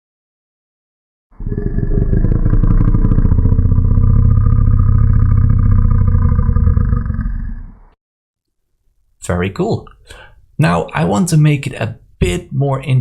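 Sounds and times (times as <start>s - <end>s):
deep monster growl: 1.4s - 8.0s.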